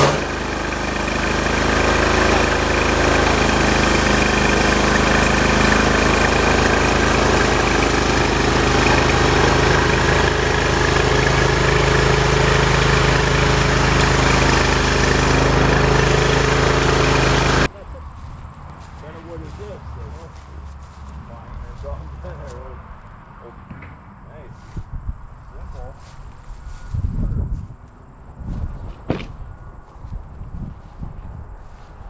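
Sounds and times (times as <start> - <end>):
sawmill engine running steadily: 0.0 - 17.7.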